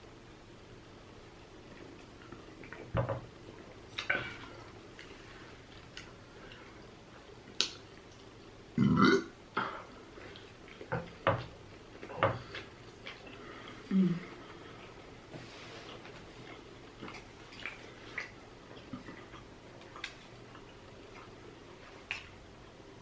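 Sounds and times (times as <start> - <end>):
lip-smacking eating sounds: 1.4 - 8.7, 9.6 - 23.0
person burping loudly: 8.8 - 9.3.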